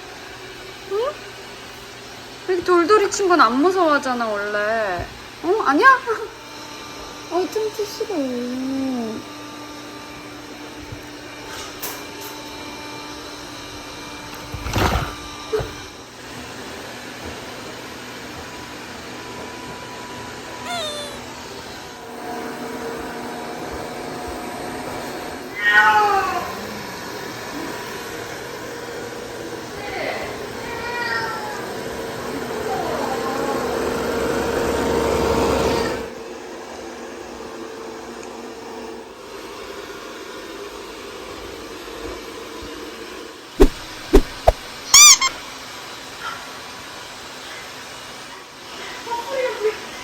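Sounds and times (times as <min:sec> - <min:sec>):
short high squeak: 0:20.7 - 0:21.2, 0:43.6 - 0:45.4
cat meowing: 0:20.7 - 0:21.3, 0:43.6 - 0:45.3
sharp knocks: 0:43.6 - 0:44.7.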